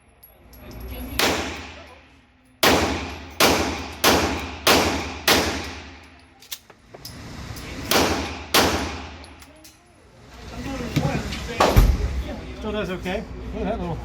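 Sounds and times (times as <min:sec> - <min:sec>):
pistol shots echoing: 0:02.6 - 0:06.0, 0:07.9 - 0:09.2.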